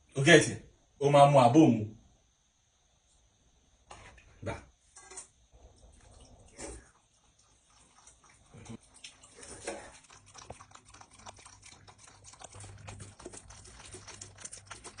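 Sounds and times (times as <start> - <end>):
dog lapping: 5.8 - 15.0.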